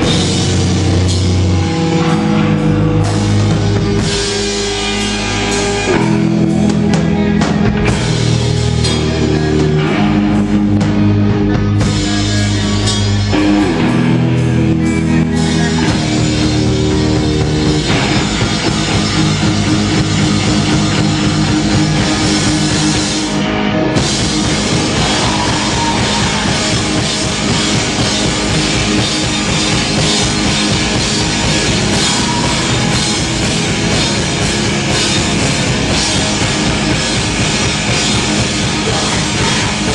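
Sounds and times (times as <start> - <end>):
distorted guitars and bass: 0.0 - 39.9
fast drum beat: 24.0 - 39.9.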